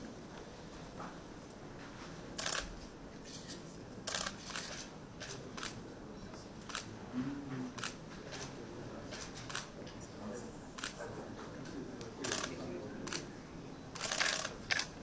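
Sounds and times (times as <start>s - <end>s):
camera shutters clicking: 2.4s - 2.8s, 4.1s - 5.8s, 6.6s - 6.9s, 7.8s - 8.5s, 9.1s - 9.7s, 10.8s - 11.0s, 12.2s - 13.3s, 14.0s - 15.0s.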